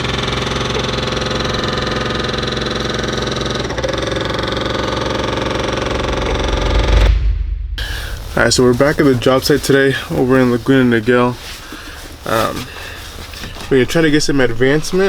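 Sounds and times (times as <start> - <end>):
construction machine engine running: 0.0 - 7.2, 13.0 - 15.0.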